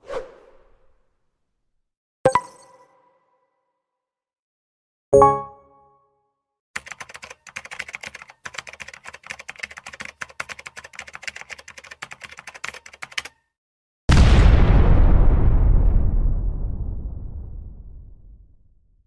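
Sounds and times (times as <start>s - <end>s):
rapid typing on keyboard: 6.8s - 13.4s.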